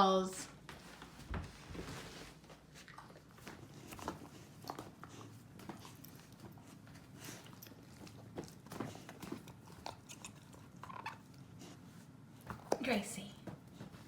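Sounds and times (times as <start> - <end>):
dog chewing on a toy ball: 2.6 - 12.8.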